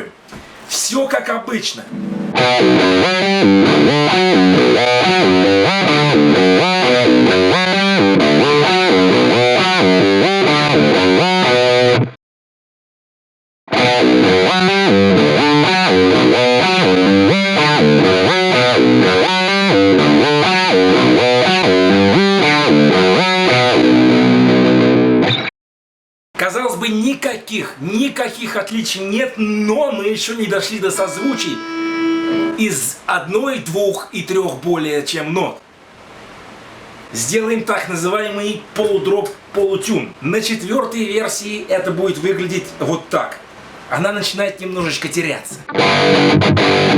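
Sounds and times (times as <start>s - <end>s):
distorted electric guitar riff: 1.9s - 12.2s, 13.7s - 25.5s, 30.6s - 32.6s, 45.7s - 46.9s.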